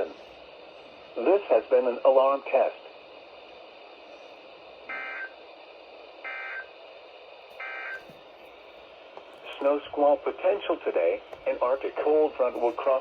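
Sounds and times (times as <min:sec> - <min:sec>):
steady speaker hiss: 0:00.0 - 0:13.0
digital data tone bursts: 0:04.9 - 0:05.4, 0:06.2 - 0:06.7, 0:07.6 - 0:08.1.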